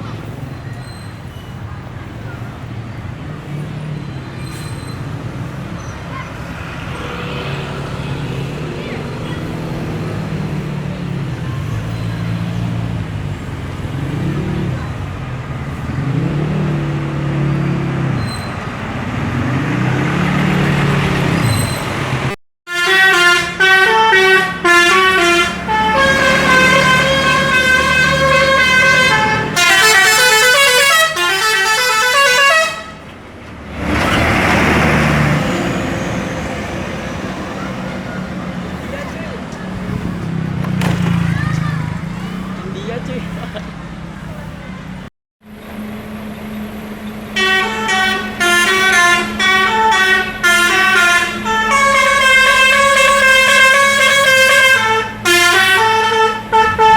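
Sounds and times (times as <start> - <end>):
bus horn playing melody: 22.7 - 33.1, 47.3 - 56.9.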